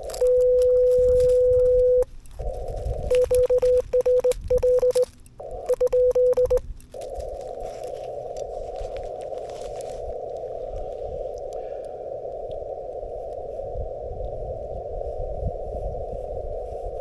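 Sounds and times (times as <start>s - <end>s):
morse code tones: 0.0s - 10.4s
radio band hiss: 4.9s - 17.0s.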